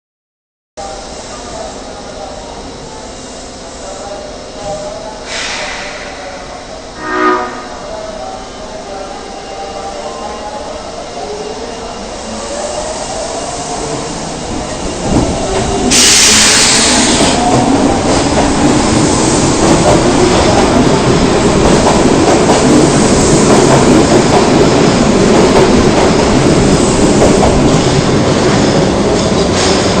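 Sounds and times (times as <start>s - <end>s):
sharp hiss: 5.2s - 6.5s, 15.8s - 17.5s
train wheels on rails: 12.2s - 30.0s.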